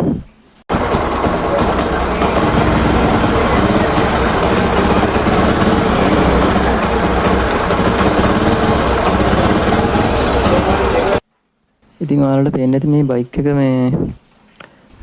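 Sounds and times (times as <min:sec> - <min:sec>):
motorcycle engine misfiring: 0:00.7 - 0:11.2.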